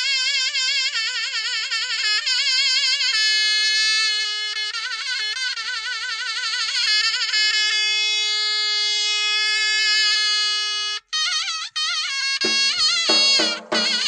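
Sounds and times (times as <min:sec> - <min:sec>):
reedy melody with vibrato: 0:12.3 - 0:14.0.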